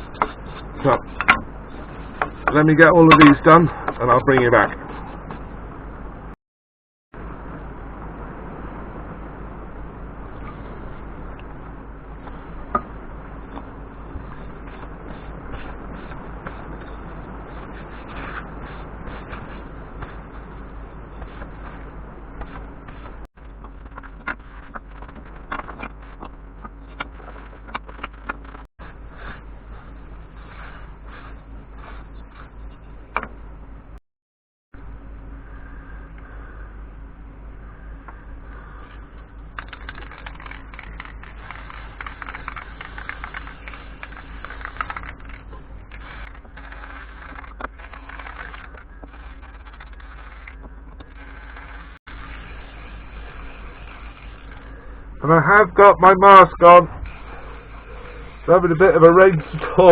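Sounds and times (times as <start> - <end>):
steady low hum: 0.0 - 6.4, 7.1 - 34.0, 34.7 - 59.9
wire brush scrubbing wood: 14.0 - 23.3, 39.8 - 54.9, 57.1 - 59.9.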